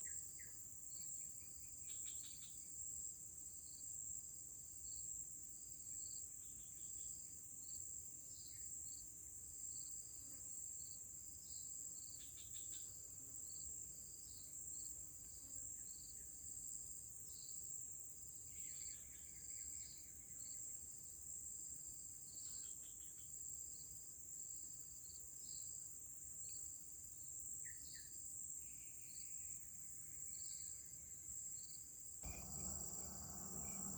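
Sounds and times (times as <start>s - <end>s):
crickets chirping: 0.0s - 33.9s.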